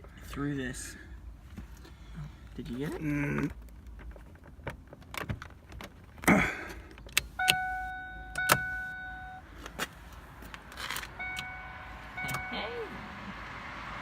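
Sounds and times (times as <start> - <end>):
car warning chime dinging: 7.4 - 9.5, 11.1 - 13.2.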